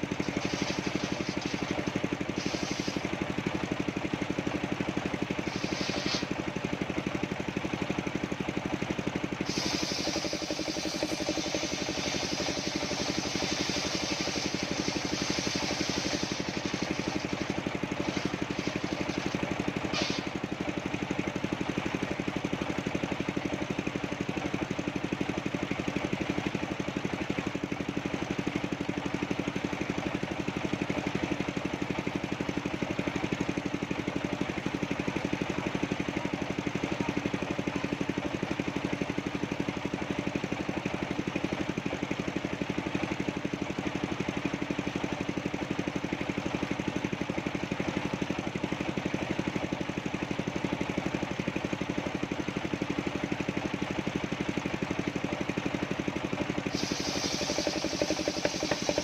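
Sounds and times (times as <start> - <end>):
hiss: 0.0 - 3.4, 5.2 - 6.6, 9.3 - 20.5, 56.5 - 59.0
sawmill engine throbbing: 0.0 - 8.7, 9.4 - 20.9, 56.6 - 59.0.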